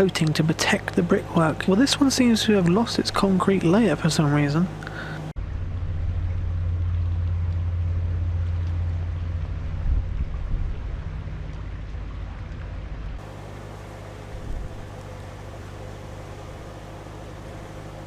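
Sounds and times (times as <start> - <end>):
diesel engine humming: 0.0 - 5.4, 13.2 - 18.0.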